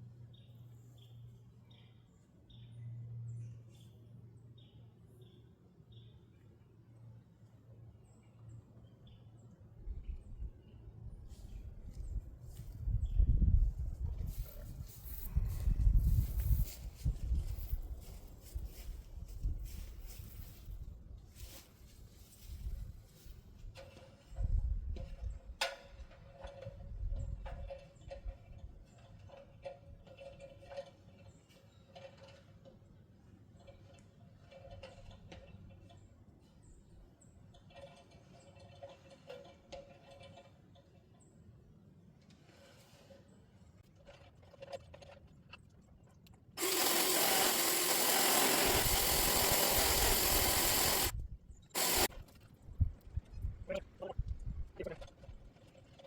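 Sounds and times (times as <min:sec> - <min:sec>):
wind buffeting microphone: 0:11.7 - 0:18.0, 0:52.6 - 0:55.4
power saw cutting wood: 0:46.6 - 0:51.1, 0:51.8 - 0:52.1.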